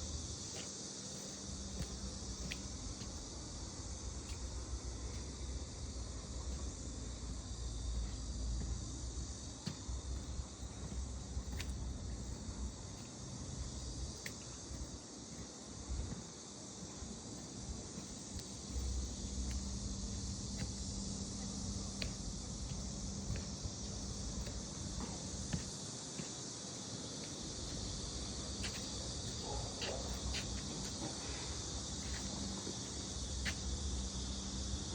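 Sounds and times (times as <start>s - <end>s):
high-pitched insect chorus: 0.0s - 34.9s
faint ticks: 21.9s - 23.5s.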